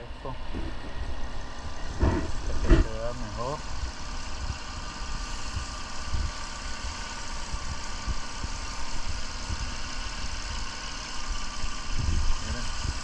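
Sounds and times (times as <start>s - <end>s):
car engine idling: 0.0s - 12.6s
constant hiss: 0.0s - 13.0s
low thuds: 1.9s - 3.0s.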